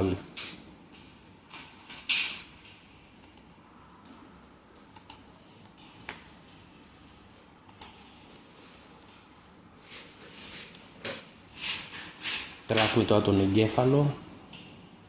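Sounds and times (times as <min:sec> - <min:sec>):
keyboard and mouse clicks: 0:04.9 - 0:06.2, 0:07.7 - 0:08.0.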